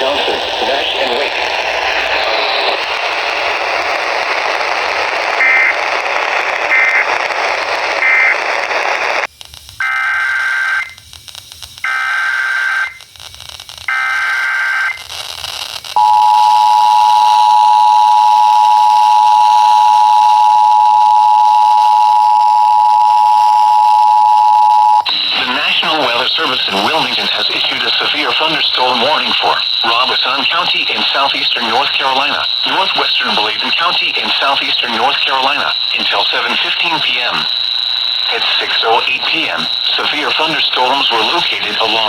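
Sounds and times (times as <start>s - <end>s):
radio static hiss: 0.0s - 14.0s, 14.9s - 16.2s, 24.6s - 42.0s
screeching data bursts: 0.6s - 11.0s, 17.0s - 42.0s
short high beeps: 16.0s - 25.1s
two-tone attention signal: 16.0s - 25.1s.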